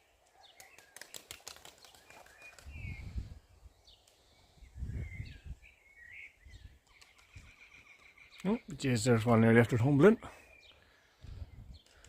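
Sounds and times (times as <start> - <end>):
small birds chirping: 0.0 - 12.0
wind buffeting microphone: 2.6 - 3.8, 4.6 - 5.7, 11.2 - 11.9.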